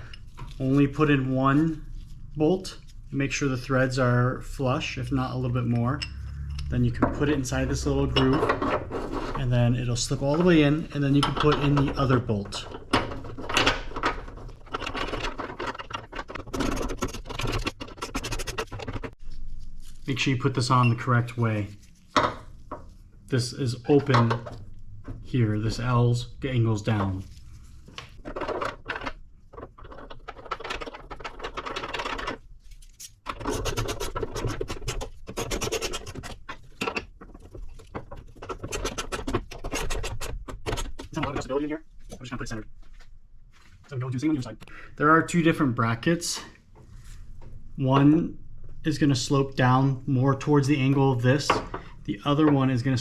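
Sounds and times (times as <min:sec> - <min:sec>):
metal bracket scraping and clicking: 0:07.2 - 0:09.5
small metal scrapes and clicks: 0:28.0 - 0:41.5.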